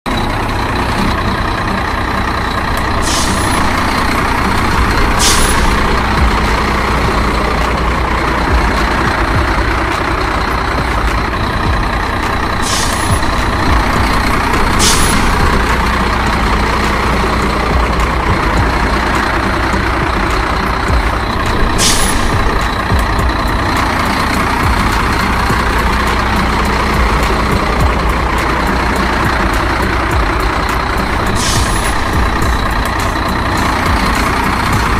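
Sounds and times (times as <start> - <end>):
heavy truck engine running: 0.0 - 34.9
air brake hiss: 3.0 - 3.9, 5.1 - 5.8, 12.6 - 13.3, 14.8 - 15.2, 21.7 - 22.3, 31.3 - 32.1.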